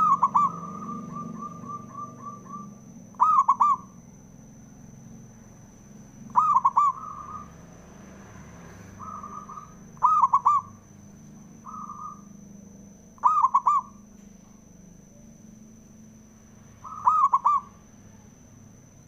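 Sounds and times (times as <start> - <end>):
dove cooing: 0.0 - 4.0, 6.3 - 7.6, 8.9 - 10.8, 11.6 - 12.3, 13.2 - 14.2, 16.8 - 17.9
faint high-pitched whine: 0.0 - 19.0.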